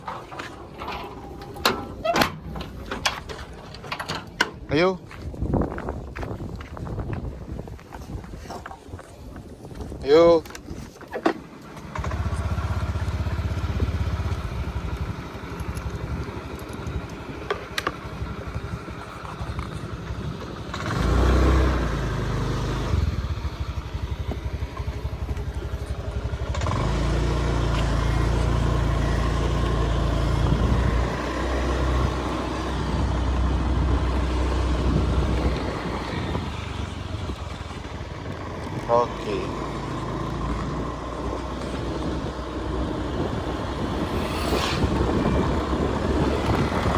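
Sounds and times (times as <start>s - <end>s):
heavy low rumble: 28.4s - 46.9s.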